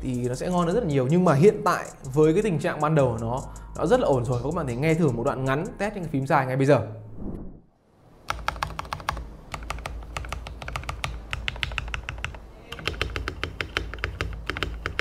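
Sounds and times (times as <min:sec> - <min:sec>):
mechanical keyboard keys clacking: 0:08.3 - 0:15.0.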